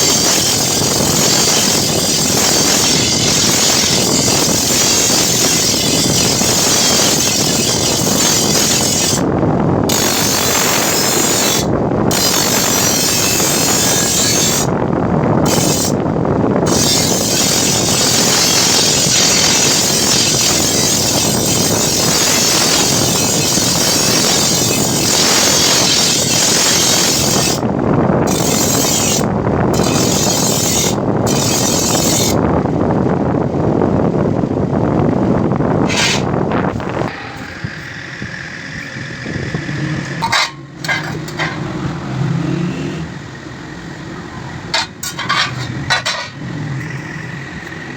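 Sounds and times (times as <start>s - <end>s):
grinder sharpening blade: 0.0s - 9.2s, 9.9s - 14.7s, 15.5s - 16.0s, 16.7s - 27.6s, 28.3s - 32.4s, 35.9s - 36.3s.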